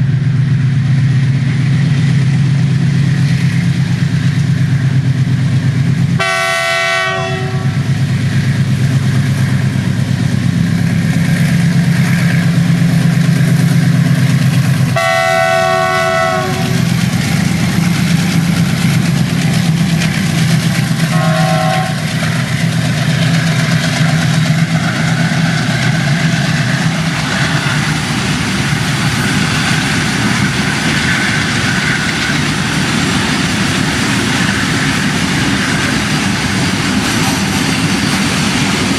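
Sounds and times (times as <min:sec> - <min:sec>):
locomotive engine droning: 0:00.0 - 0:38.9
train horn blasts: 0:06.2 - 0:07.8, 0:15.0 - 0:16.8, 0:21.1 - 0:22.1
wagons rolling with rail clatter: 0:08.5 - 0:38.9.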